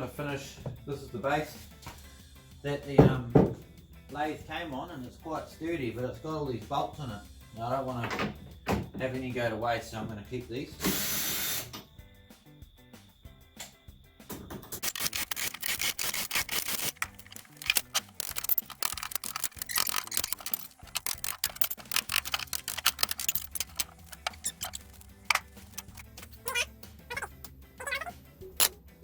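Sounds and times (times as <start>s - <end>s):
rapid clicking and rattling: 14.8s - 28.7s.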